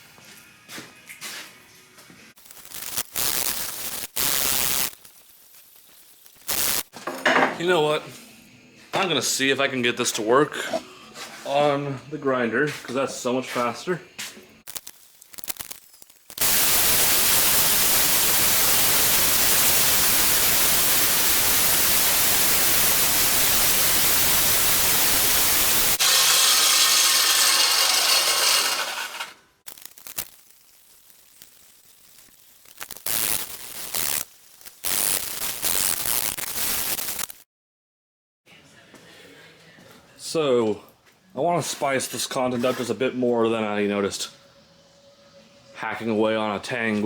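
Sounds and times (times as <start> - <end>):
power grinder grinding steel: 23.4 - 35.2.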